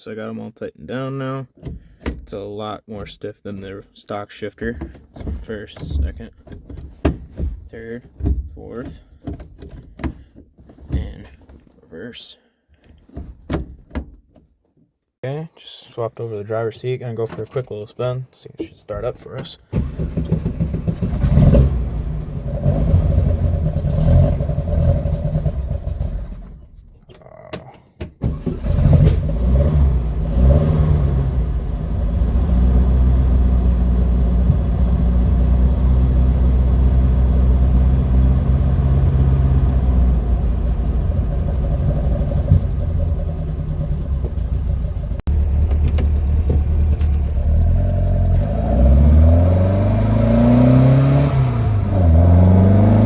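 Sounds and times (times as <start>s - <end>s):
car engine running: 19.8s - 26.9s, 28.3s - 53.0s.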